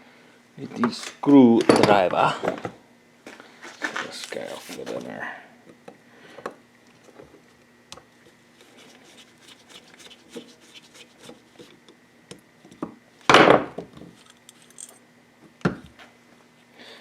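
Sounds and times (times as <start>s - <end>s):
screwdriver clicks and scrapes on metal: 14.2s - 15.0s.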